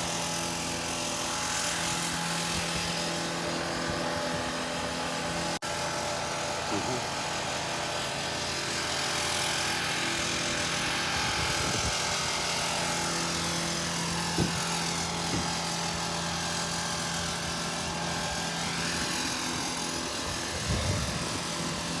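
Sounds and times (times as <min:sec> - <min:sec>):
engine-driven machine running: 0:00.0 - 0:22.0
sharp knocks: 0:14.4 - 0:14.6.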